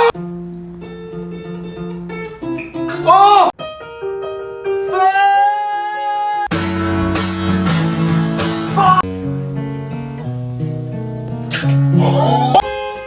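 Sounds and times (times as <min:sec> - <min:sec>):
held high note: 0:00.0 - 0:00.2, 0:06.5 - 0:09.1
guitar chords: 0:00.0 - 0:04.7, 0:06.5 - 0:13.0
rock band with drums: 0:06.5 - 0:09.2.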